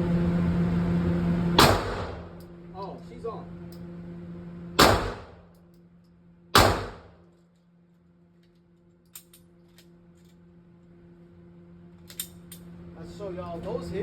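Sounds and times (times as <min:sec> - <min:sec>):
steady low hum: 0:00.0 - 0:14.0
pistol shots: 0:01.6 - 0:02.4, 0:04.8 - 0:05.4, 0:06.6 - 0:07.2.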